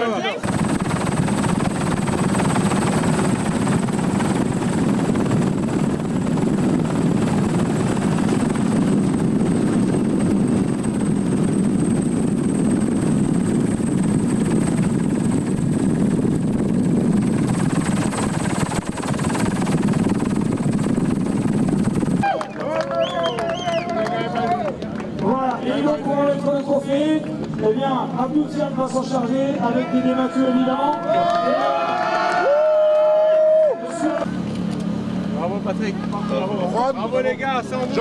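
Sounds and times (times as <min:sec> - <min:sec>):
engine drone: 0:32.6 - 0:38.0.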